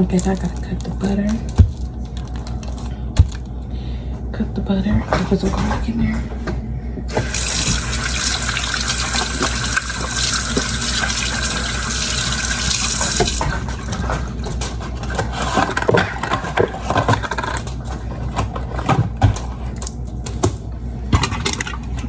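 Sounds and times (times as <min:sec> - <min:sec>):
tap water running into pot: 0:07.1 - 0:14.0.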